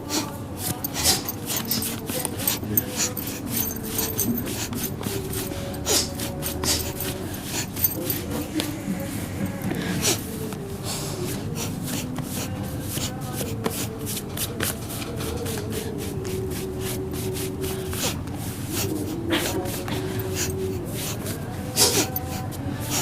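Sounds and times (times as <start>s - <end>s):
low wavering voice: 0.0s - 14.2s, 14.8s - 23.0s
hands rubbing and patting: 0.6s - 8.8s, 11.9s - 20.0s.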